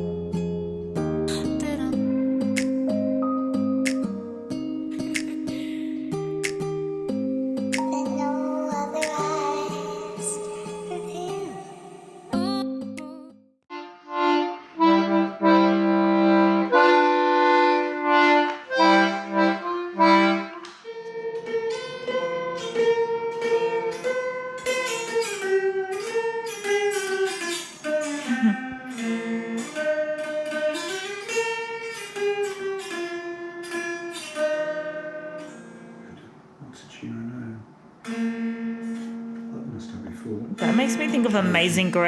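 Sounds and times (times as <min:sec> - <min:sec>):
reedy instrumental melody: 0:00.0 - 0:13.1, 0:13.7 - 0:26.4, 0:40.6 - 0:42.0.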